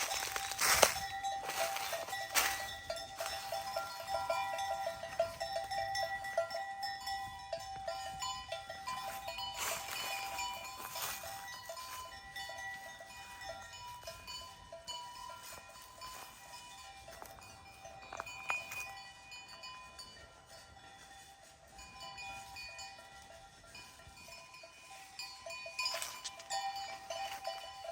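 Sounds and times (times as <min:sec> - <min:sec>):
livestock bells jingling and clanking: 0:00.0 - 0:27.9.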